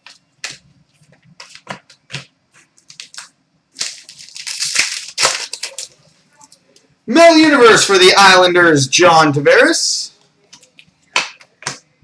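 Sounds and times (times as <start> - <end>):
cards rustling: 1.4 - 6.0.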